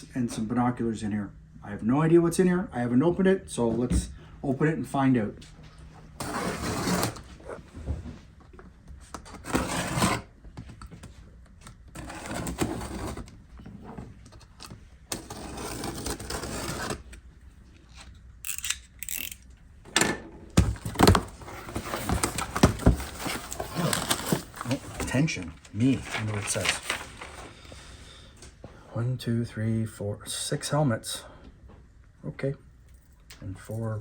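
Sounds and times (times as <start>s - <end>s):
cardboard scraping and rustling: 6.2s - 8.1s, 9.2s - 10.3s, 11.9s - 17.2s, 20.6s - 27.6s.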